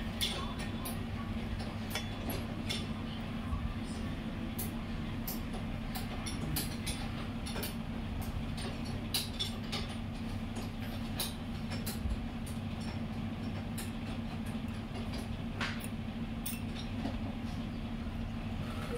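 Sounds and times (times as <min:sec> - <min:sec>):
low mechanical hum: 0:00.0 - 0:18.9
light metal clicks and clinks: 0:15.7 - 0:16.9.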